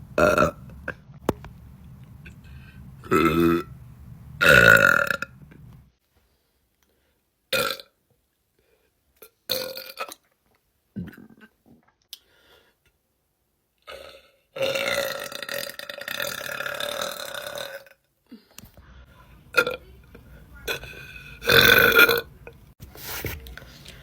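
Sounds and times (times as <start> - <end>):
women burping: 20.7 - 22.3.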